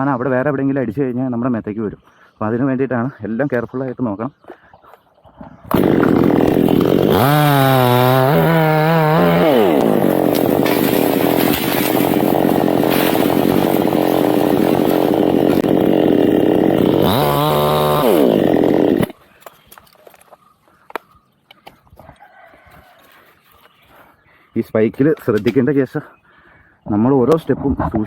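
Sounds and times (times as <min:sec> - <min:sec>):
chainsaw cutting wood: 0:05.7 - 0:19.2.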